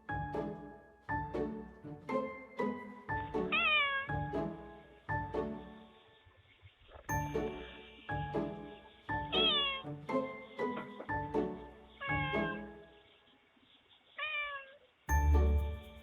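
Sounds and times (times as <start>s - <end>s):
cat meowing: 3.5s - 4.1s, 9.4s - 9.8s, 12.0s - 12.6s, 14.2s - 14.8s
music with ringing notes: 7.1s - 12.7s, 15.1s - 16.0s.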